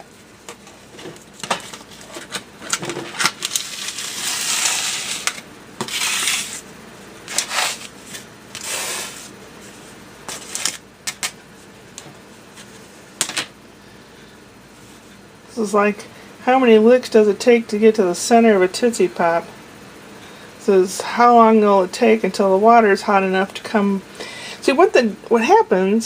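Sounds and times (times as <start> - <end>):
scraping hissing rubs: 3.8 - 6.7, 7.3 - 10.5.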